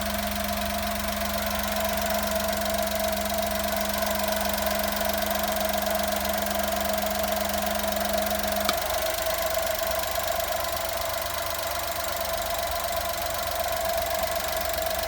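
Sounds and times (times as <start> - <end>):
van engine idling: 0.0 - 15.0
connector click: 8.6 - 9.1.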